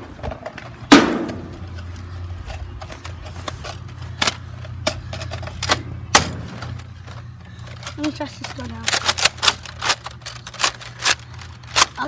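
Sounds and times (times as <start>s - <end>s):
low steady hum: 0.0s - 12.0s
plastic toy blaster clicks: 7.1s - 12.0s.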